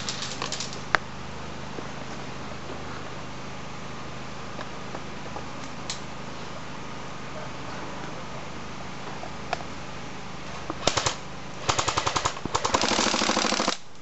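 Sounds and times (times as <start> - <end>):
airsoft rifle firing bursts: 10.8 - 13.8.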